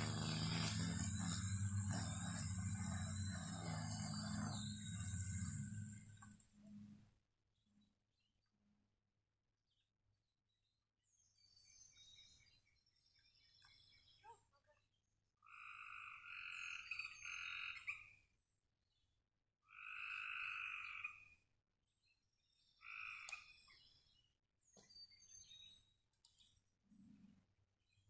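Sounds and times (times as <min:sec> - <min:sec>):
birds chirping faintly: 0:00.0 - 0:07.0.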